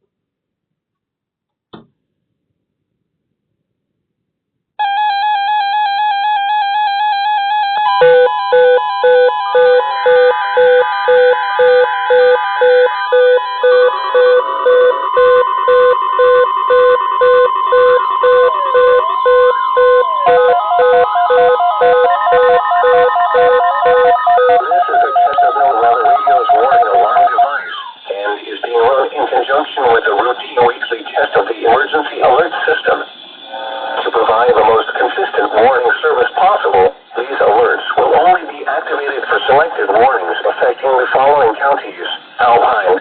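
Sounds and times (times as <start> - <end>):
warbling alert tone: 4.8 - 29.2
up-and-down pitch sweeps: 4.8 - 30.4
pulsing beeps: 4.8 - 43.0.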